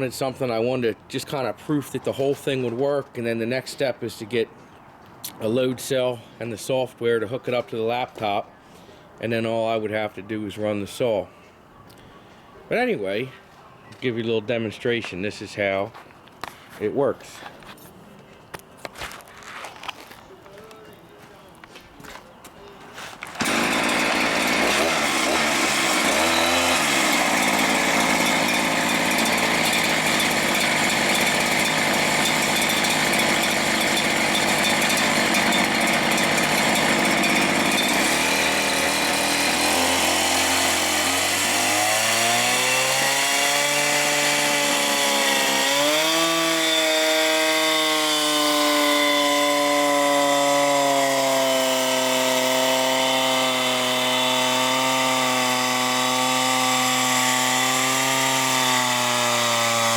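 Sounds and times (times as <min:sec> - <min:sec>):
chainsaw engine running: 0:23.2 - 0:59.9.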